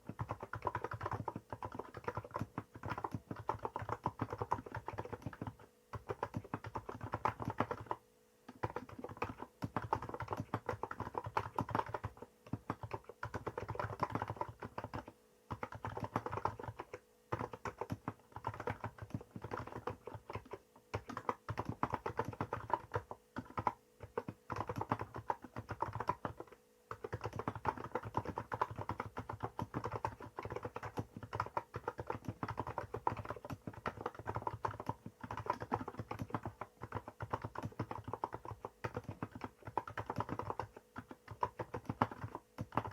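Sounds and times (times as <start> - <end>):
fast keyboard typing: 0.0 - 42.9.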